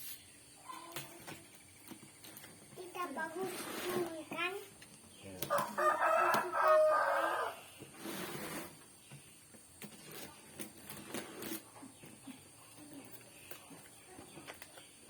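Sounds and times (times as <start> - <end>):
rooster crowing: 5.5 - 7.7.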